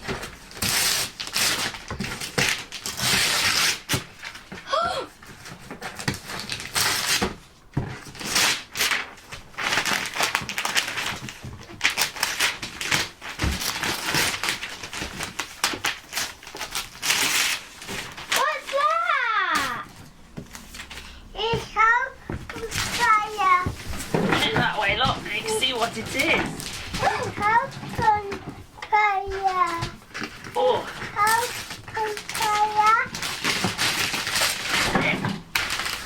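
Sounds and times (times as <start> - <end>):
wrapping paper tearing: 0.0 - 4.5, 5.2 - 7.4, 8.0 - 36.0.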